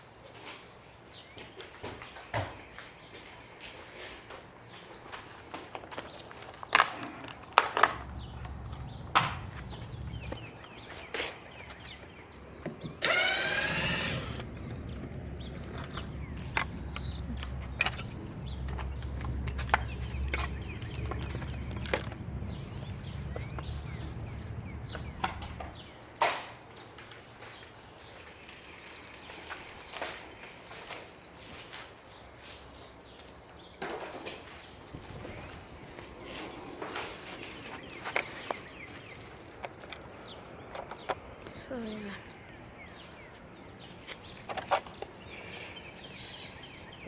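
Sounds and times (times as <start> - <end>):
garage door opener motor: 12.6 - 25.9
clicks: 12.6 - 26.5.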